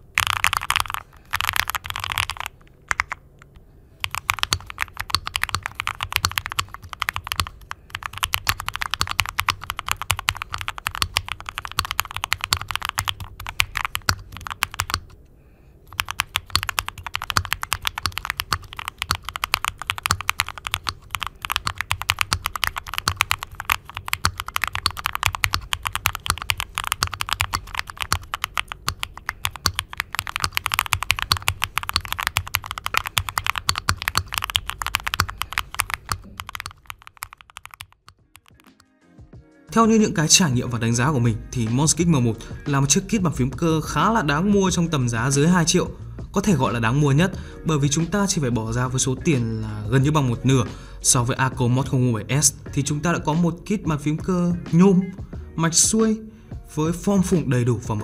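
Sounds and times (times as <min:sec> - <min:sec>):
mechanical keyboard typing: 0:00.0 - 0:03.2, 0:04.0 - 0:15.2, 0:15.9 - 0:38.8.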